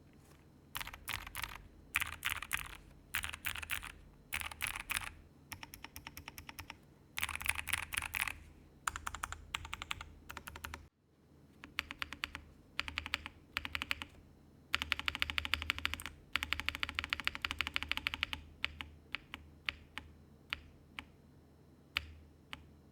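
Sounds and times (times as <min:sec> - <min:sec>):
mechanical keyboard typing: 0:00.8 - 0:10.8, 0:11.6 - 0:21.1.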